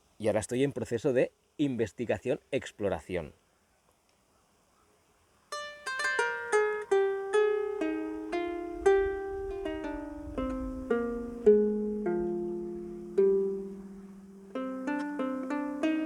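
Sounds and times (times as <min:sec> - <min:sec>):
harp plucked notes: 0:05.6 - 0:16.0.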